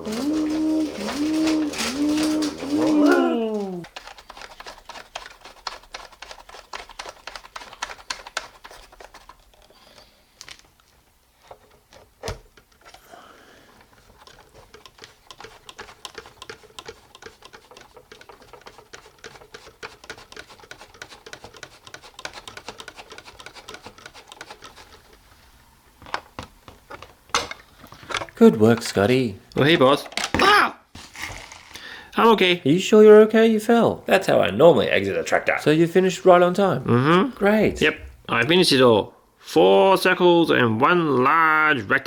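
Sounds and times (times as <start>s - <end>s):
plastic toy vehicles clicking: 0.0s - 25.3s, 26.0s - 30.4s.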